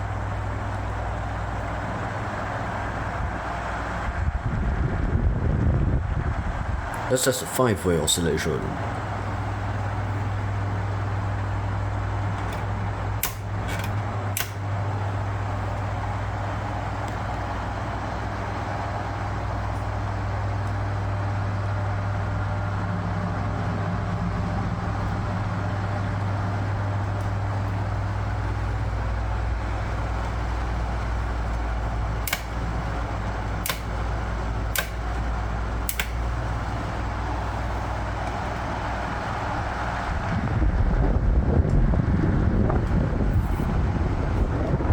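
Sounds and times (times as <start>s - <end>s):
table fan running: 0.0s - 44.9s
sharp clicks: 12.4s - 14.7s, 32.2s - 36.7s.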